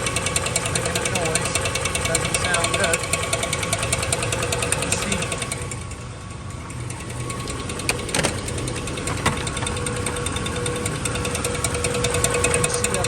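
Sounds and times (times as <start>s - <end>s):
car engine running: 0.0s - 13.0s
fast ticking and rubbing: 0.0s - 13.0s
sharp engine knocks: 6.7s - 13.0s.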